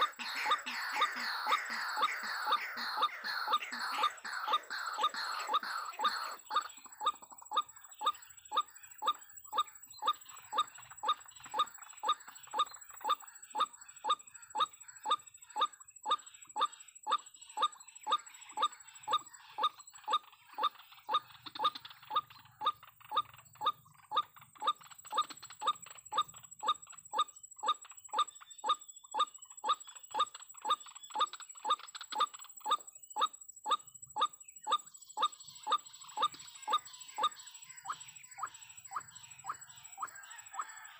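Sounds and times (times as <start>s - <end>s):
waterhen calling: 0.0s - 7.2s.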